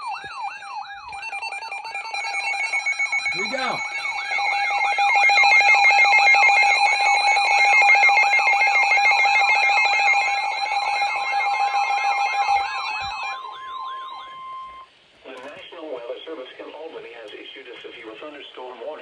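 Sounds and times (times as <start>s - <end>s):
fast warbling alarm tone: 0.0s - 14.9s
steady high beeping tones: 0.0s - 14.9s.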